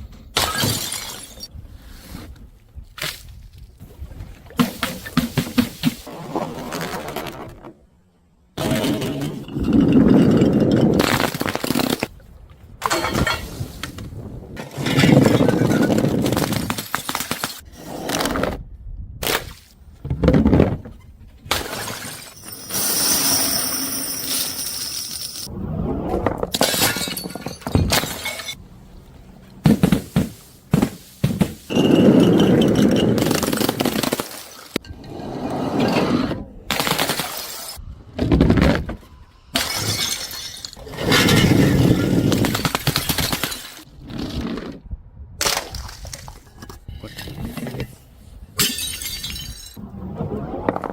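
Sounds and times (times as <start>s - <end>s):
glass bottles smashing: 0.4s - 1.5s, 21.5s - 25.5s, 26.6s - 28.6s, 39.5s - 43.8s, 48.6s - 49.8s
glass shattering: 0.4s - 1.5s, 21.5s - 25.5s, 26.6s - 28.6s, 39.5s - 43.8s, 48.6s - 49.8s.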